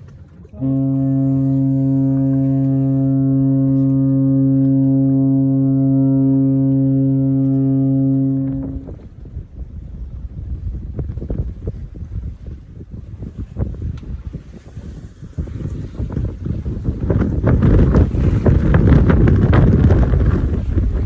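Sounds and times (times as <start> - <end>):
deep ship horn blast: 0.1 - 10.7, 15.4 - 21.0.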